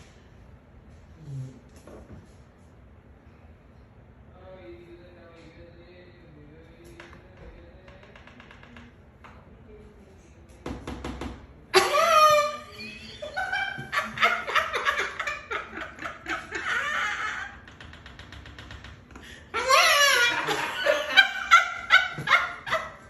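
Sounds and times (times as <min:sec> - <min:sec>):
laughter: 0:11.8 - 0:17.8, 0:19.2 - 0:23.0.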